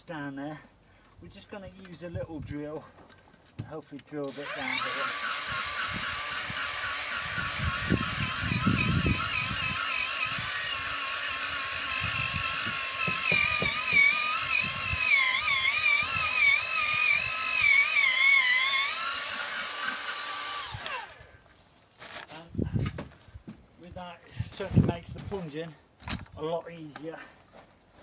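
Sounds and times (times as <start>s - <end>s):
drill bit knocking in soil: 4.2s - 20.2s
electric drill whining: 4.2s - 21.3s.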